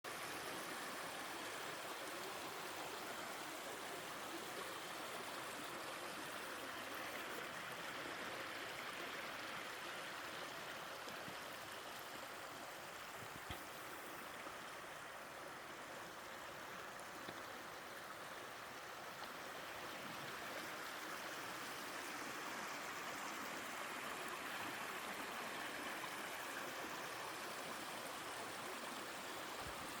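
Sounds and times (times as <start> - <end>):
stream flowing: 0.1 - 30.0.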